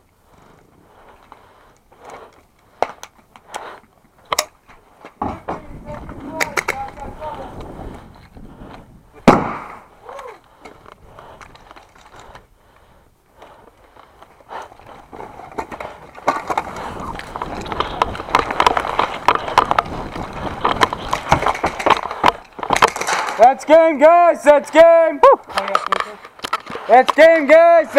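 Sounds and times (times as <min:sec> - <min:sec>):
airsoft gunfire: 0:09.2 - 0:09.8.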